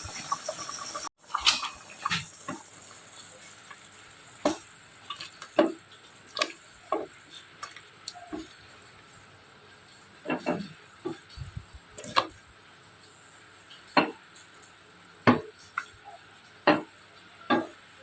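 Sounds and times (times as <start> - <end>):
utensils knocking and tapping: 16.7 - 16.9, 17.5 - 17.8.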